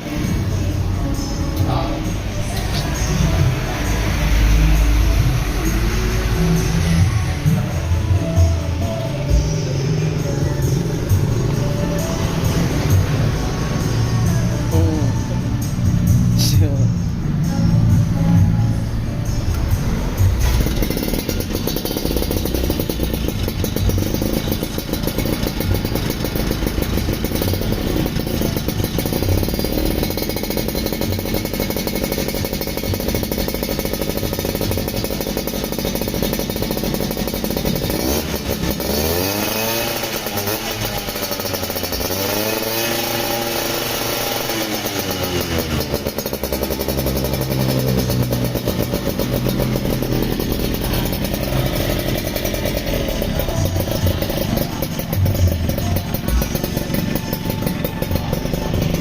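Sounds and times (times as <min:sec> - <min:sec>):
two-stroke engine revving: 0:00.0 - 0:59.0.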